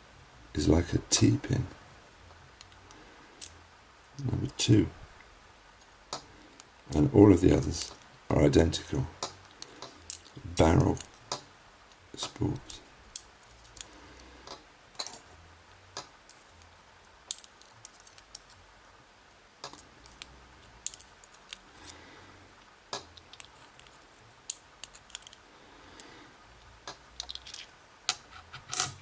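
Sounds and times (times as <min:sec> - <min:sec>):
small metal lock parts clicking: 0:12.6 - 0:14.0, 0:17.3 - 0:18.6, 0:19.7 - 0:22.0, 0:23.1 - 0:25.4, 0:27.2 - 0:29.0.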